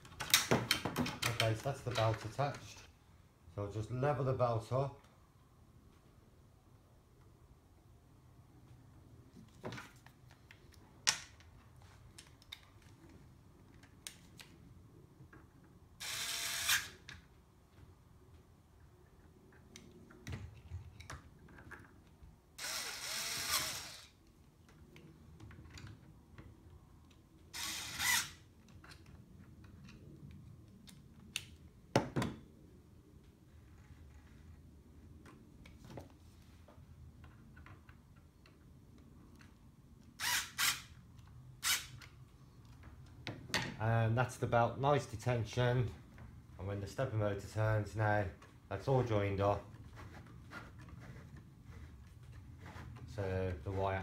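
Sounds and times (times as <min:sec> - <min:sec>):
clicks and knocks of tools: 0:00.0 - 0:02.7
whirring rasping bursts: 0:22.6 - 0:24.1.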